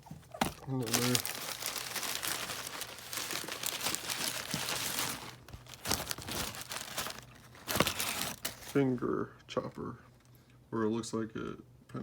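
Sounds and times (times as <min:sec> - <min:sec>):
packaging crinkling and rustling: 0:00.0 - 0:08.9.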